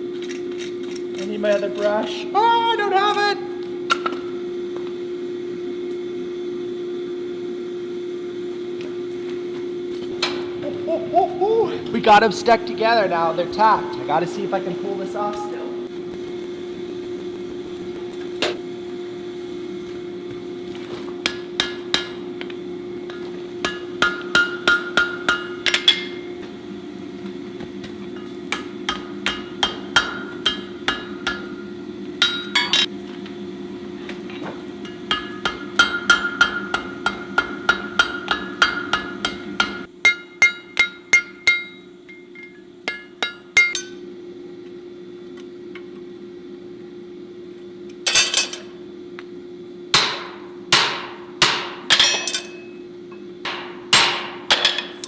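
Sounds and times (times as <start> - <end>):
steady hum: 0.0 - 55.0
hammer striking steel on anvil: 21.2 - 26.4, 28.1 - 32.9, 34.8 - 44.1, 48.1 - 48.7, 49.9 - 55.0.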